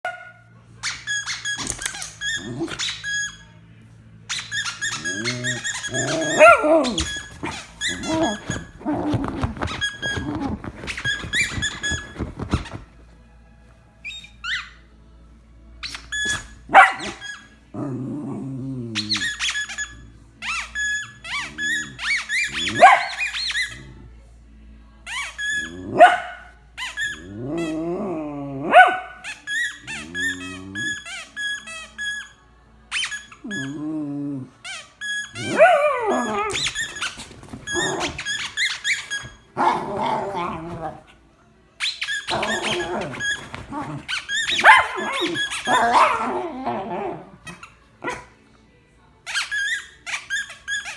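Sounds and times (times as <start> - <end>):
dog squeaking: 0.8 - 3.5, 4.3 - 12.9, 14.0 - 14.8, 15.8 - 17.6, 18.8 - 23.9, 25.1 - 27.9, 28.7 - 33.9, 34.6 - 41.1, 41.8 - 48.2, 49.3 - 50.9
dog grumbling and whining: 1.6 - 3.1, 4.5 - 12.9, 16.2 - 19.5, 21.3 - 24.2, 25.5 - 26.4, 27.0 - 31.2, 33.4 - 34.6, 35.3 - 41.2, 42.2 - 48.4
dog yipping: 4.3 - 12.8, 15.8 - 17.5, 19.0 - 23.8, 25.5 - 27.6, 28.7 - 31.1, 35.2 - 41.1, 41.8 - 48.3.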